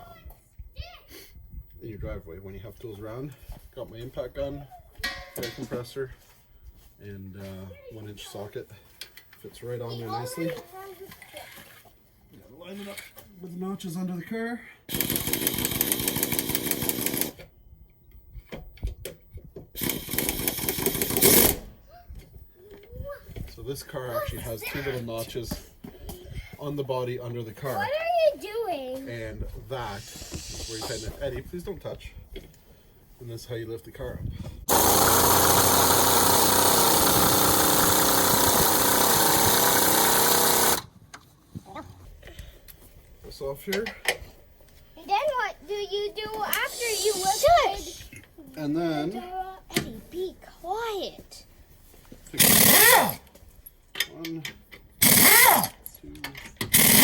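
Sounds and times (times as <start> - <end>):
pneumatic impact gun hammering: 14.9 - 17.4, 19.7 - 21.7, 30.0 - 31.1, 34.7 - 41.0, 52.4 - 53.3, 55.0 - 55.8, 56.6 - 57.0.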